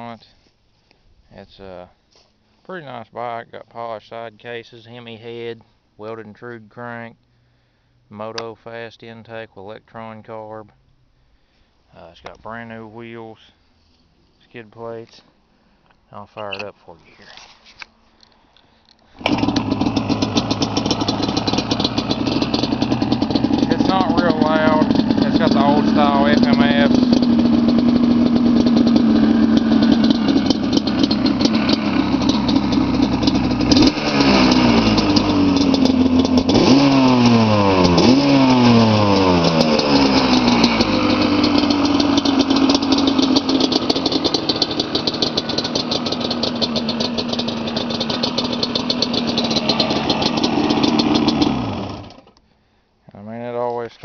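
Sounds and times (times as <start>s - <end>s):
two-stroke engine idling and revving: 19.2s - 52.4s.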